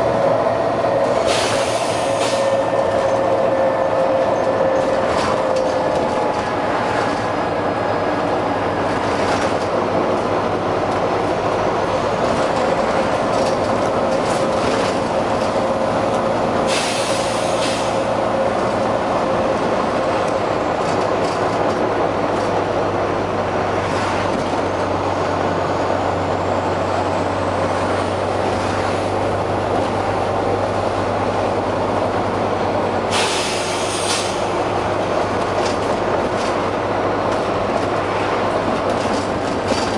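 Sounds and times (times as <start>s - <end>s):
bus diesel engine drone: 0.0s - 39.9s
air brake hiss: 1.2s - 2.4s, 16.6s - 18.1s, 33.1s - 34.5s.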